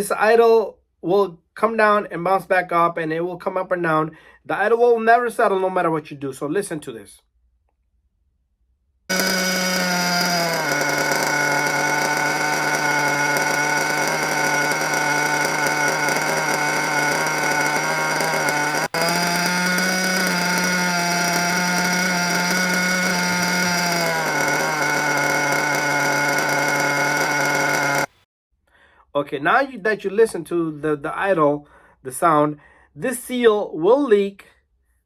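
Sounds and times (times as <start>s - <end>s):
nitro rc engine idling: 9.1s - 28.2s.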